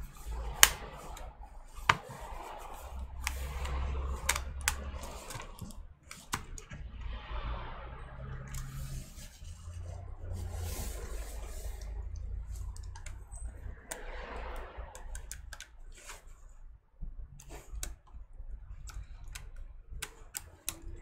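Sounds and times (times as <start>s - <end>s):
plastic scraping: 0.0s - 16.6s
low hum: 0.0s - 21.0s
plastic clicks and taps: 0.5s - 2.3s, 3.2s - 6.8s.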